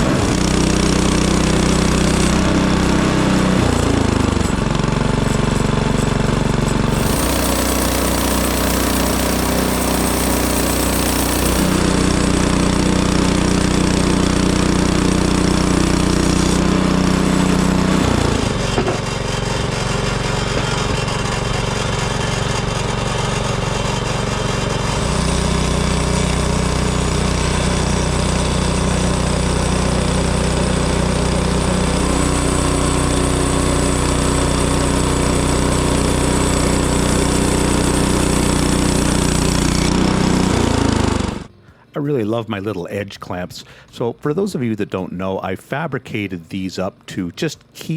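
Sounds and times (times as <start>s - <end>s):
bandsaw mill engine running: 0.0s - 41.5s.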